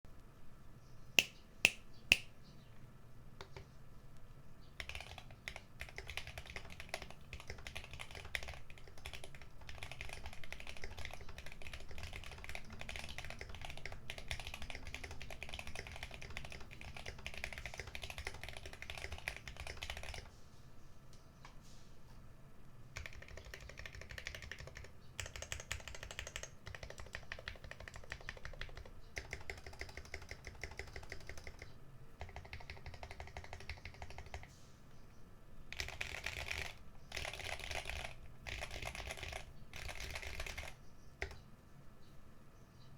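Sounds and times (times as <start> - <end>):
fast typing on mechanical keyboard: 4.8 - 20.3, 23.0 - 34.5, 35.7 - 41.4.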